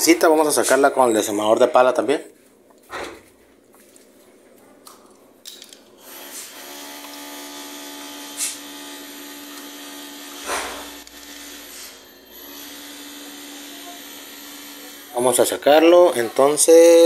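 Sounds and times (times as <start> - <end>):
small electric motor whine: 6.0 - 17.0
sharp knocks: 10.4 - 10.9.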